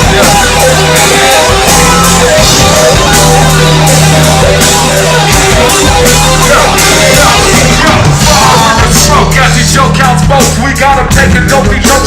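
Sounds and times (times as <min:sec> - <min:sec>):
electric guitar: 0:00.0 - 0:09.5
bass guitar: 0:00.0 - 0:12.0
drum kit beat: 0:00.0 - 0:12.0.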